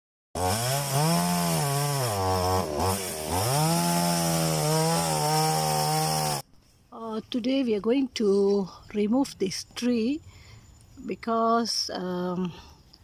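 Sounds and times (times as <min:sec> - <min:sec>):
chainsaw cutting wood: 0:00.4 - 0:06.4.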